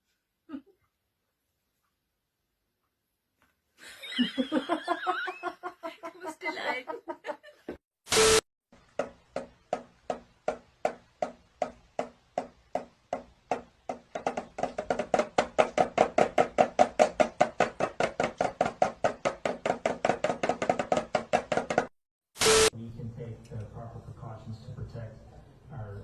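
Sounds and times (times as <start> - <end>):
sharp evenly spaced knocks: 8.8 - 21.9.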